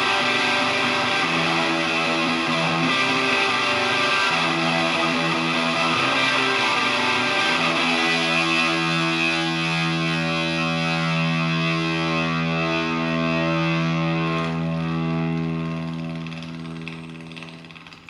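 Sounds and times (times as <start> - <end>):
distorted electric guitar: 0.0 - 18.0.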